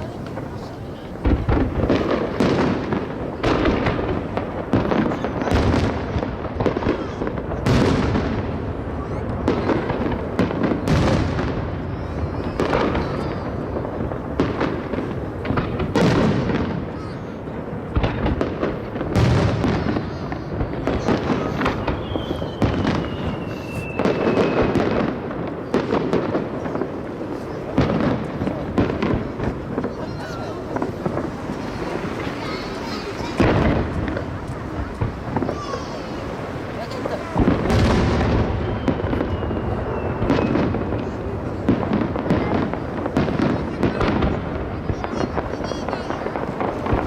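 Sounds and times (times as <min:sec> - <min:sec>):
firework whistle: 0:10.7 - 0:13.8, 0:19.5 - 0:27.6, 0:29.8 - 0:42.3
firework shells bursting: 0:17.9 - 0:47.0.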